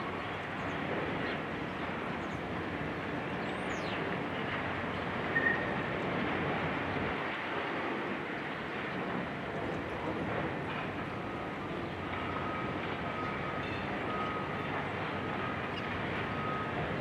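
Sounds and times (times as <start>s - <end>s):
demolition excavator working: 9.6s - 17.0s.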